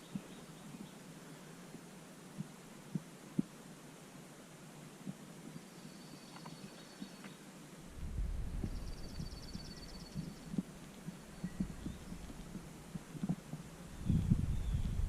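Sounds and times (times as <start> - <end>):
low microphone rumble: 7.9 - 15.0.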